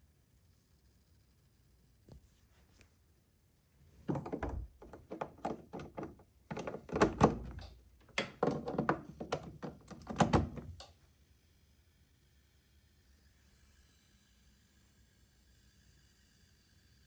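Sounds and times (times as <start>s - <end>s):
heavy thunks: 4.0s - 10.8s
knocks clicks and rattles: 4.1s - 10.9s.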